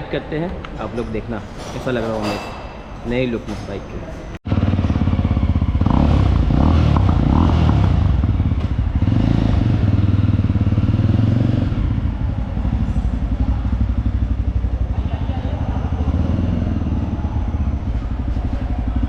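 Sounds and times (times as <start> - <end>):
motorcycle engine running: 4.4 - 19.0.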